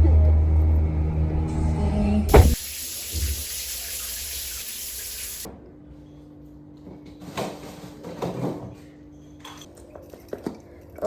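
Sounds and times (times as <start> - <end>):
soft knocks: 2.3 - 2.6
water running from a tap: 2.3 - 5.5.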